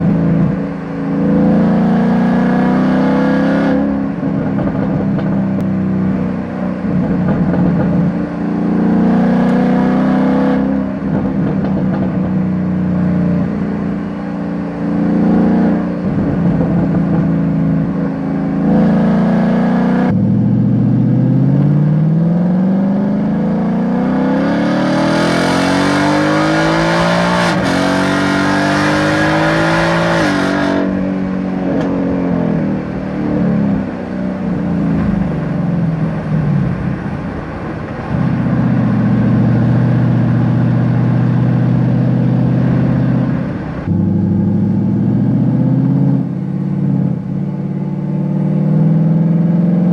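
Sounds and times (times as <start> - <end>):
car engine revving: 0.0 - 49.9
exhaust popping and crackling: 3.9 - 8.5, 10.6 - 14.8, 15.6 - 18.8, 26.2 - 45.5.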